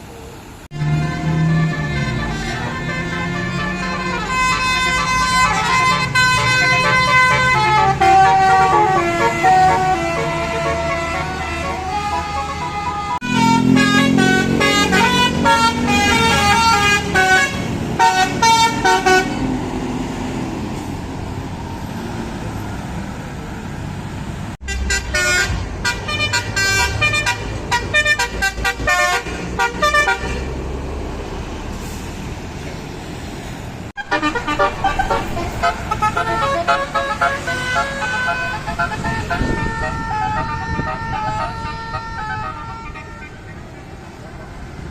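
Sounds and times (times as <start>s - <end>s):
bus engine running: 0.0s - 44.9s
multi-note bus air horns: 0.7s - 19.6s, 24.6s - 30.6s, 34.0s - 44.6s.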